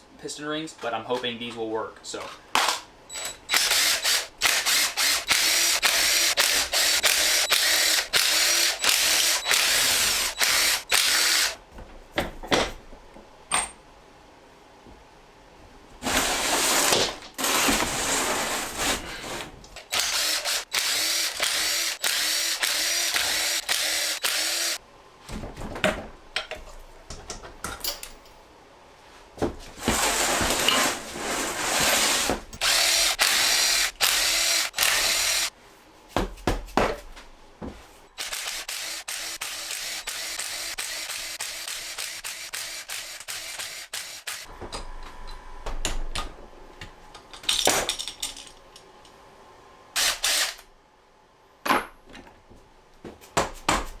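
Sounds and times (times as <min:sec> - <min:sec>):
cordless power drill running: 0:03.1 - 0:11.6, 0:19.9 - 0:24.8, 0:32.6 - 0:35.5, 0:38.2 - 0:44.5, 0:50.0 - 0:50.6.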